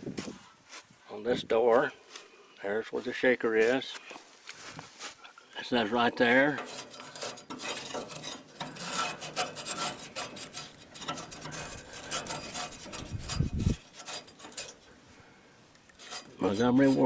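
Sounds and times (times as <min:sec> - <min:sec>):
scraping and rubbing strokes: 0:03.0 - 0:15.1, 0:15.7 - 0:17.0.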